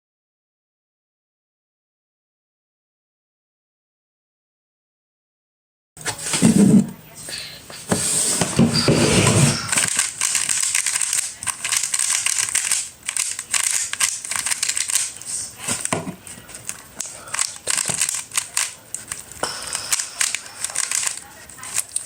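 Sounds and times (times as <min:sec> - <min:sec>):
packaging crinkling: 0:08.8 - 0:22.0.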